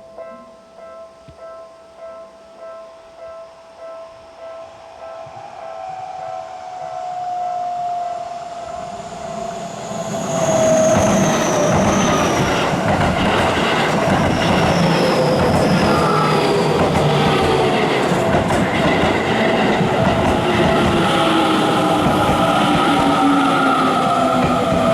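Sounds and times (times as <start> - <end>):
train whine: 3.7 - 24.9
train wheels clattering: 10.4 - 24.9.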